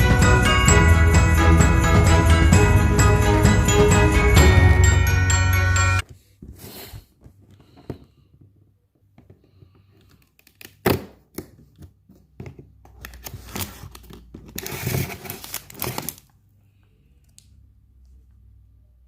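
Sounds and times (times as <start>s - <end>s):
food packaging crinkling and tearing: 13.0s - 16.4s.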